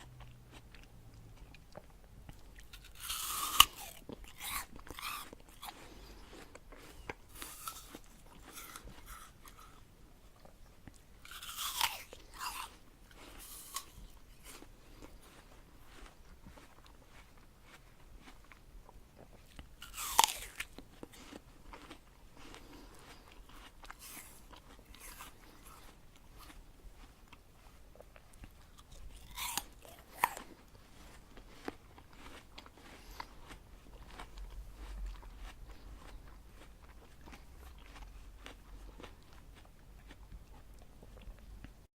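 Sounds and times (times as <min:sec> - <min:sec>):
crunching apple bites: 0:00.0 - 0:41.8
crackly chewing: 0:00.0 - 0:41.9.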